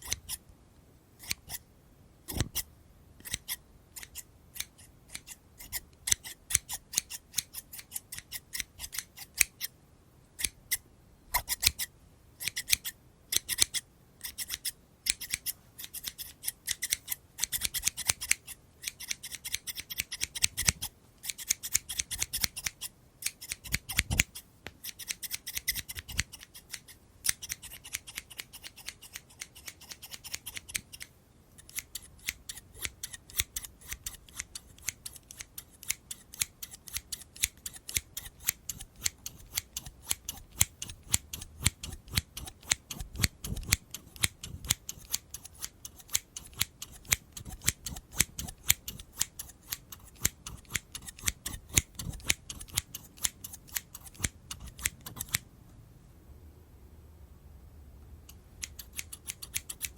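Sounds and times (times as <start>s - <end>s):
scissors snipping: 0.0s - 0.4s, 1.2s - 1.6s, 2.3s - 9.7s, 10.4s - 10.6s, 11.3s - 55.4s, 58.3s - 59.9s.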